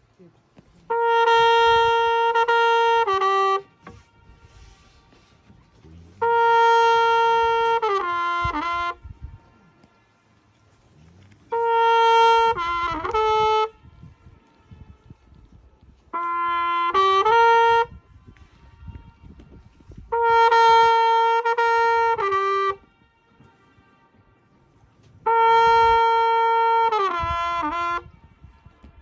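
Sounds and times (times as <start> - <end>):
flugelhorn playing held notes: 0.6 - 29.0.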